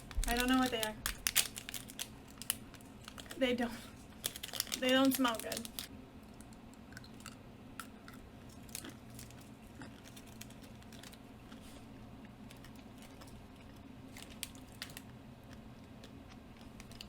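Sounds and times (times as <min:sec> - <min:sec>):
steady low hum: 0:00.0 - 0:17.0
packaged items clicking: 0:00.2 - 0:03.4, 0:04.2 - 0:05.9, 0:16.6 - 0:17.0.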